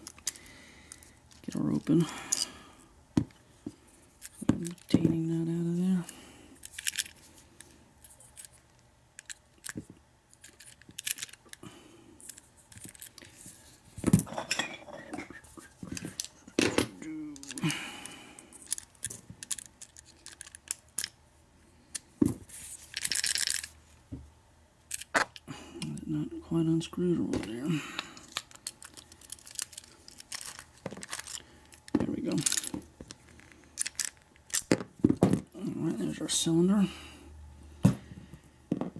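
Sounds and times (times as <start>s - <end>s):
small metal parts clinking: 0.1s - 2.5s, 5.9s - 7.2s, 9.2s - 11.6s, 18.5s - 21.2s, 22.8s - 23.7s, 24.9s - 25.5s, 28.2s - 35.4s.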